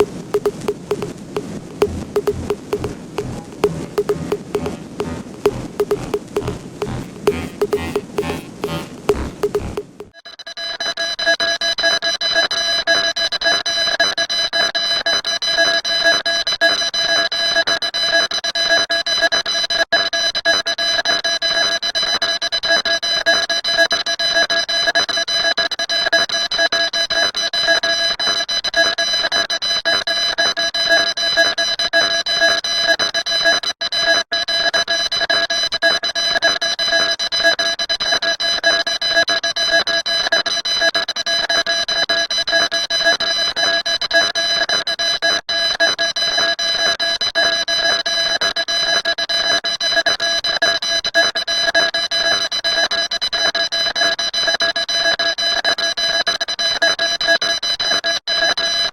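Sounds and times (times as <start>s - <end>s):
shrill electronic alarm tone: 1.8s - 10.0s.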